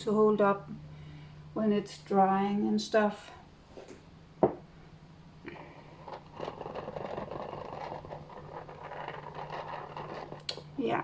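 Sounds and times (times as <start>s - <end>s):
canvas spinner whirring rattle: 5.6s - 10.6s.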